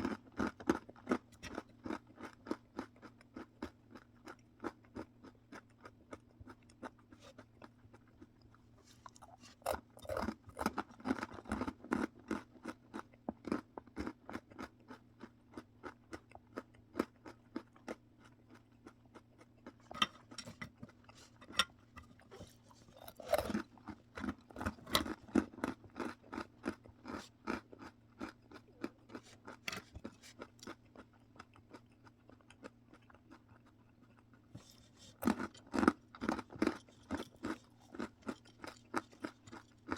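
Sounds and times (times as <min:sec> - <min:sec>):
chewing crunchy snack: 0:00.0 - 0:39.9
faint steady hum: 0:00.0 - 0:39.9.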